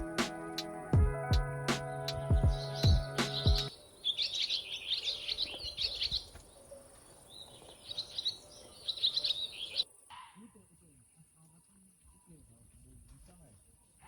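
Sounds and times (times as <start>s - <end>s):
background music: 0.0s - 3.7s
songbirds twittering: 1.4s - 14.0s
faint high-pitched hiss: 3.7s - 14.0s.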